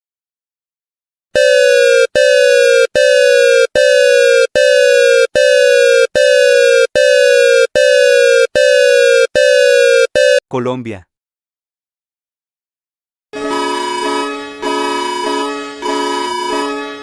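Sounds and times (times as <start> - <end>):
emergency alert alarm beeps: 1.4 - 10.4, 13.4 - 16.8.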